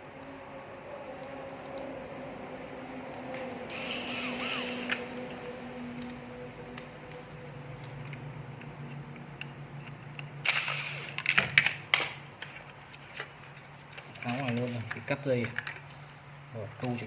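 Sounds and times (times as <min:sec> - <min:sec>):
low hum: 0:00.0 - 0:10.5
parts clicking and rattling: 0:03.4 - 0:17.0.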